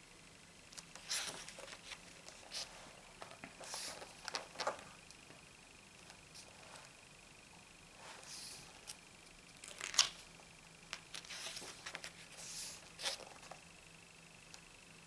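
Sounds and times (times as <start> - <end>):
paper pages swishing: 1.0 - 2.8, 11.2 - 13.6.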